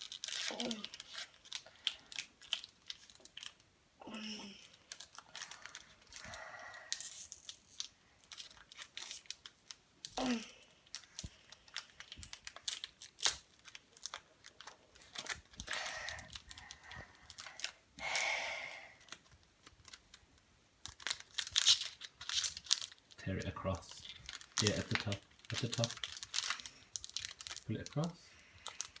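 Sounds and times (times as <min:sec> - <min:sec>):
foil wrapper crinkling: 0:00.0 - 0:03.7, 0:04.5 - 0:17.8, 0:18.8 - 0:29.0.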